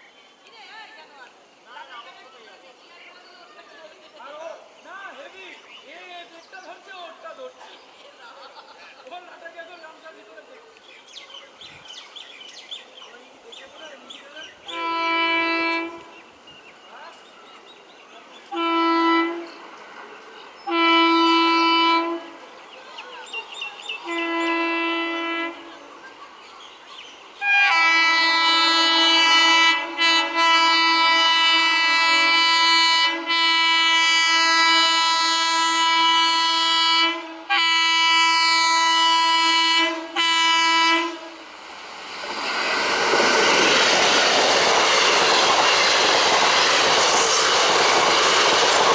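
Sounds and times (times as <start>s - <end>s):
train horn blasts: 14.7s - 16.3s, 18.5s - 19.7s, 20.7s - 22.4s, 24.0s - 25.8s, 27.4s - 41.6s
train wheels rattling on track: 39.4s - 48.9s.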